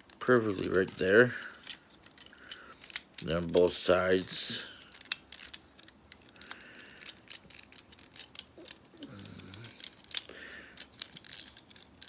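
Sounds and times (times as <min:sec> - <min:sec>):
plastic toy parts clicking: 0:00.0 - 0:12.0.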